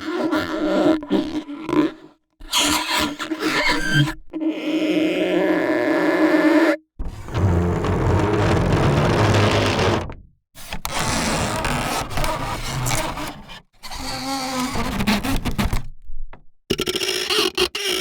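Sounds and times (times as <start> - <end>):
raspy grinding bow scrape: 2.5 - 4.2.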